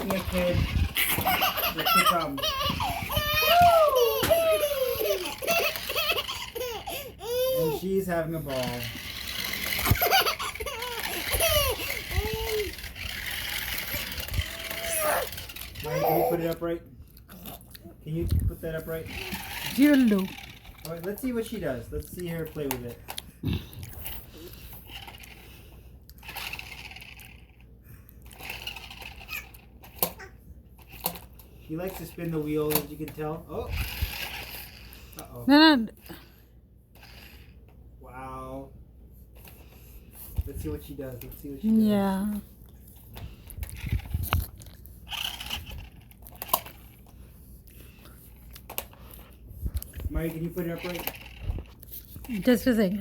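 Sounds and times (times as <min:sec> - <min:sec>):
toy car wheels spinning and rattling: 0:00.0 - 0:16.7, 0:18.4 - 0:23.1, 0:24.0 - 0:25.5, 0:26.2 - 0:27.6, 0:28.2 - 0:35.0, 0:37.0 - 0:37.6, 0:43.2 - 0:47.1, 0:49.9 - 0:53.0.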